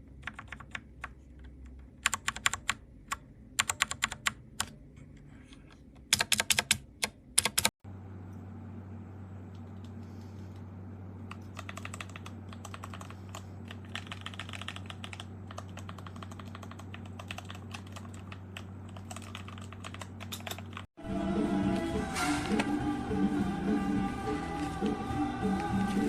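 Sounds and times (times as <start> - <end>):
typing on mechanical keyboard: 0.2 - 1.2, 2.0 - 4.7, 6.1 - 7.7, 11.3 - 20.9
steady low hum: 7.2 - 26.0.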